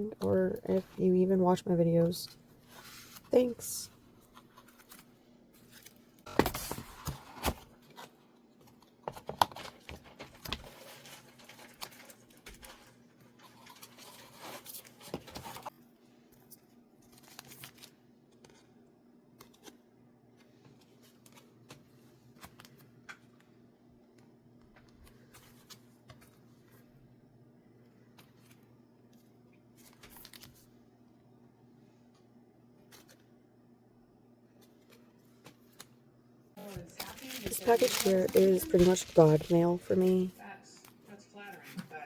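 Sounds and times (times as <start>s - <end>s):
mailers torn and rustled: 17.0s - 18.6s, 36.7s - 40.2s.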